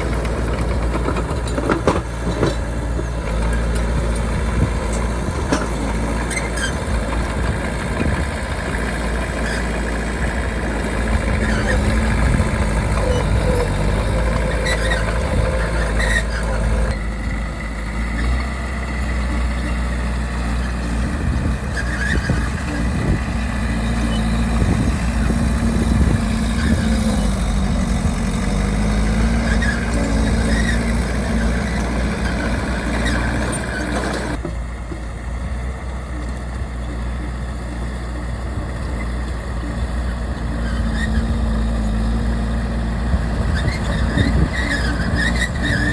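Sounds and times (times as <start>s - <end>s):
bulldozer diesel engine running: 0.0s - 45.9s.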